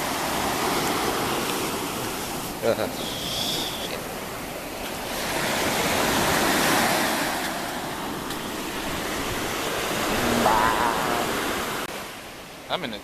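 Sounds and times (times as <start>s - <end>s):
sea waves breaking on shore: 0.0s - 13.0s.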